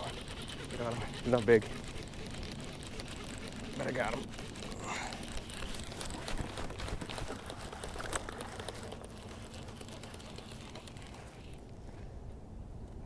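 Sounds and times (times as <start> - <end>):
fishing reel clicking: 7.2 - 11.6.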